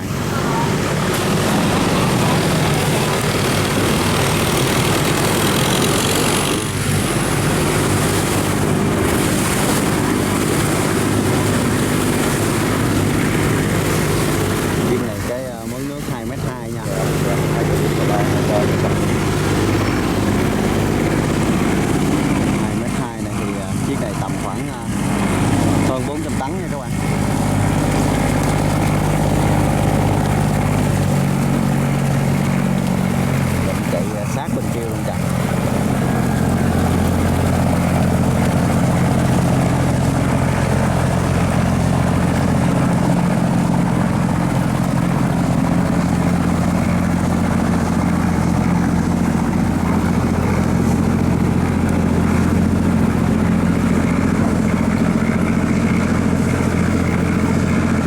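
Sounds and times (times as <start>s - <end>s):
barge diesel engine drone: 0.0s - 58.0s.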